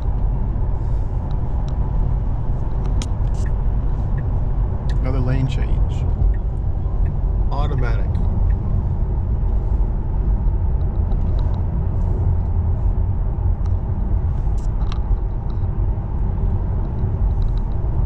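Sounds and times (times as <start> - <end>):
road and tyre rumble in car cabin: 0.0 - 18.0.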